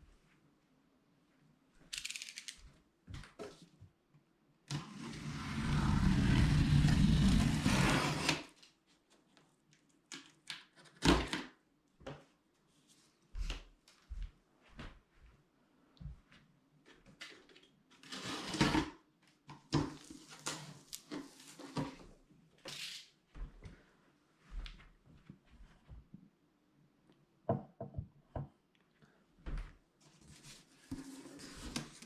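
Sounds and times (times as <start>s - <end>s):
loud scraping rustling packaging: 5.0s - 8.5s, 18.0s - 18.8s.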